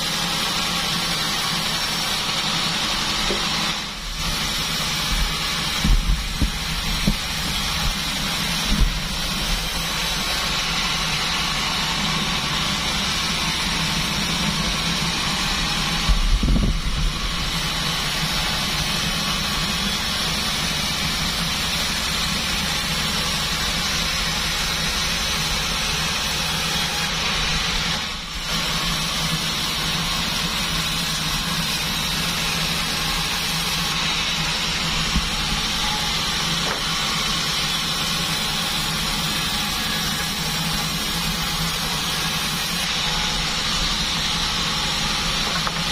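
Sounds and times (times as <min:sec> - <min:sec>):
bandsaw sawmill running: 0:00.0 - 0:45.9
brief knock: 0:36.6 - 0:36.9.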